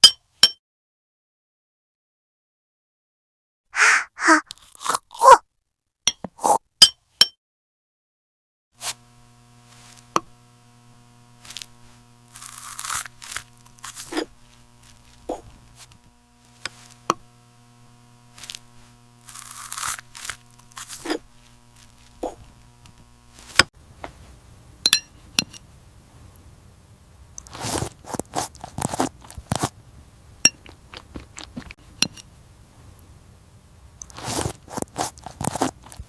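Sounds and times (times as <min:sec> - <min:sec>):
fruit crunching and tearing: 0:03.8 - 0:05.4, 0:12.4 - 0:13.4, 0:19.3 - 0:21.0, 0:27.5 - 0:29.7, 0:30.5 - 0:31.8, 0:34.1 - 0:36.0.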